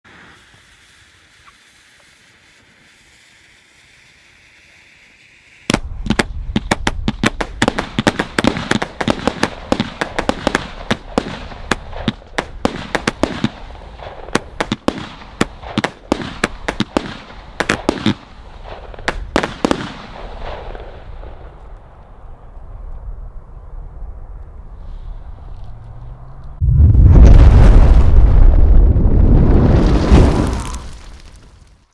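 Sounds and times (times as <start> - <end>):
faint hiss: 0.1 - 6.0
firework bangs and cracks: 5.7 - 22.0, 26.6 - 31.8
rumble: 18.6 - 31.8.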